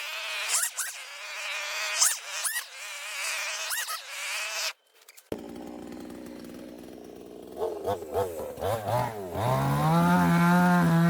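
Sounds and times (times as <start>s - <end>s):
chainsaw idling: 5.3s - 11.0s.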